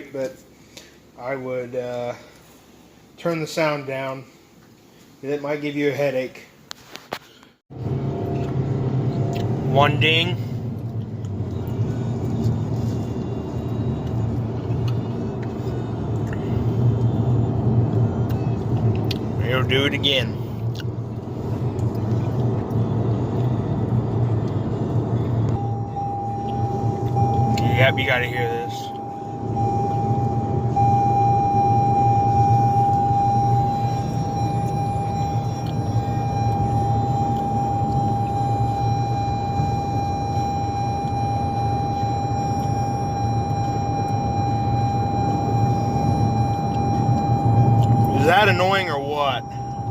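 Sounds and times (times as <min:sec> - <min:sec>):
car road and engine noise: 0:07.6 - 0:49.9
seatbelt reminder tone: 0:25.5 - 0:49.9.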